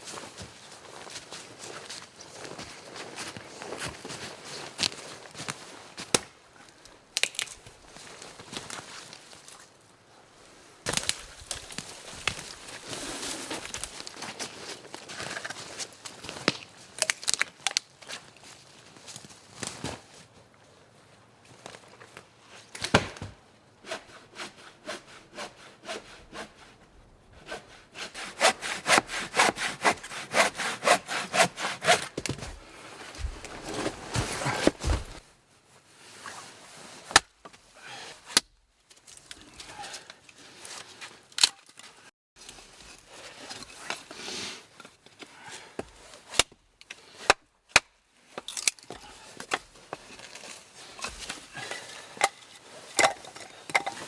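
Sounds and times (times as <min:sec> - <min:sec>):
hand saw cutting wood: 0:23.8 - 0:26.8, 0:27.4 - 0:32.6, 0:33.2 - 0:35.2.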